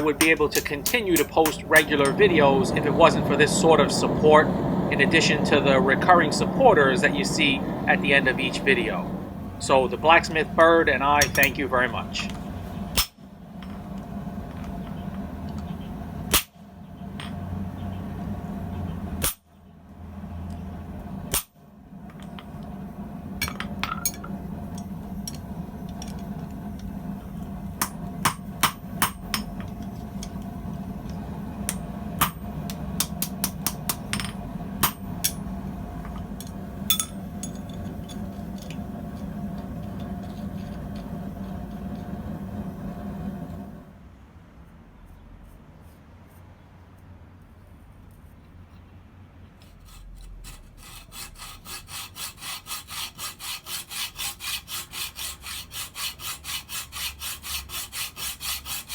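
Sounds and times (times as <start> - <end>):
hammer striking steel on anvil: 0.0 - 2.2, 11.1 - 11.6, 27.8 - 29.7, 31.7 - 35.5, 36.4 - 37.8
steady low hum: 0.0 - 44.0.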